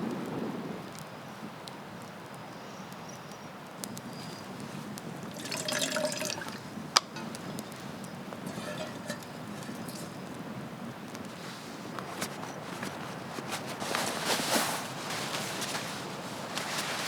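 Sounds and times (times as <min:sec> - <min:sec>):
water dripping and trickling: 0:03.8 - 0:10.4.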